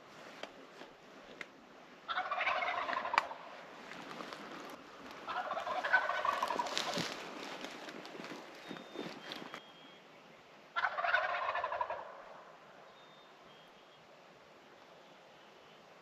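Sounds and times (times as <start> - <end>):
turkey gobbling: 2.1 - 3.5, 5.2 - 7.3, 10.8 - 12.5.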